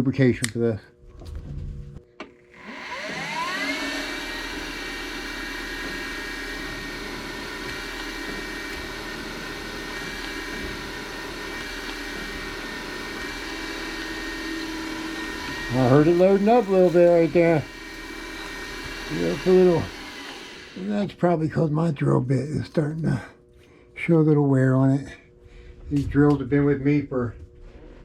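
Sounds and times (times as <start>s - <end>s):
drill bit drilling aluminum: 2.5s - 21.1s
milling machine spindle whine: 2.5s - 23.3s.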